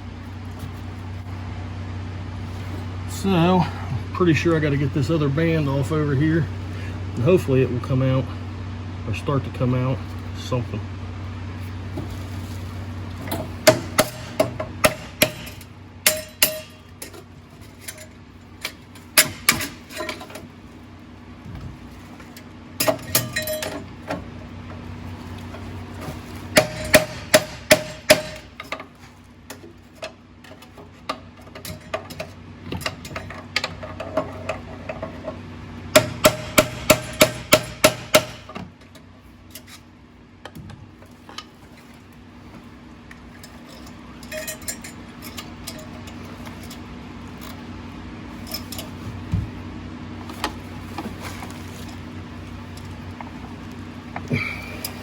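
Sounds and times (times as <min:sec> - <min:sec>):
hammer striking metal: 0:13.6 - 0:16.8, 0:26.6 - 0:28.5, 0:36.0 - 0:38.5.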